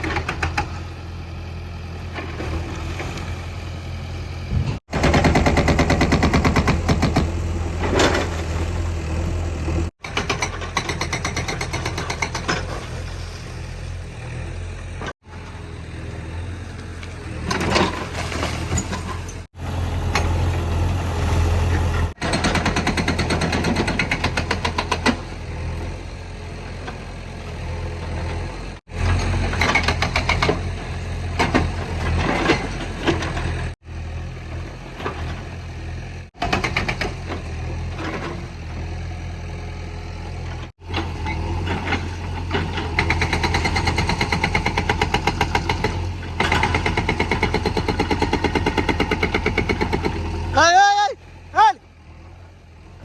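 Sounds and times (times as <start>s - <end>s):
backhoe diesel engine working: 0.0s - 53.0s.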